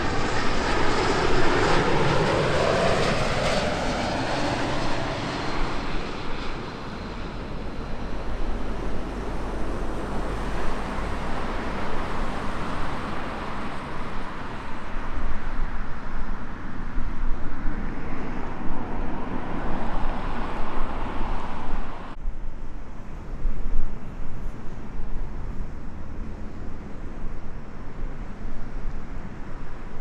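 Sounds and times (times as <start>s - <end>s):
jet engine rushing: 0.0s - 22.2s
steady low rumble: 0.0s - 30.0s.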